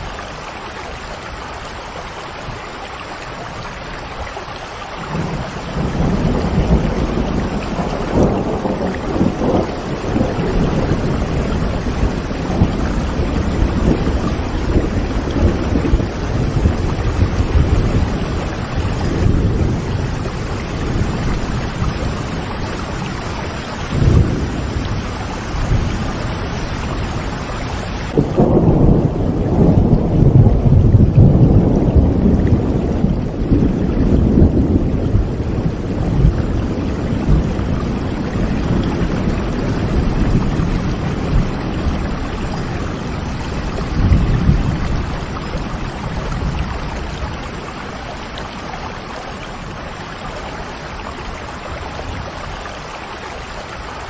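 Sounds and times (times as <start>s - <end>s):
steady rain: 0.0s - 54.0s
rumbling thunder: 5.0s - 52.7s.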